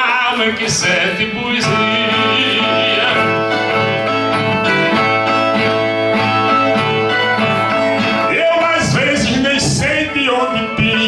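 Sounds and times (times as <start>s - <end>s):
viola plucked and strummed: 0.0s - 11.0s.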